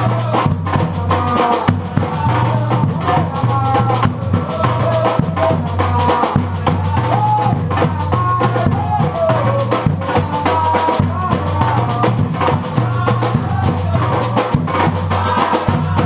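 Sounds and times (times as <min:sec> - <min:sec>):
percussion ensemble: 0:00.0 - 0:16.0.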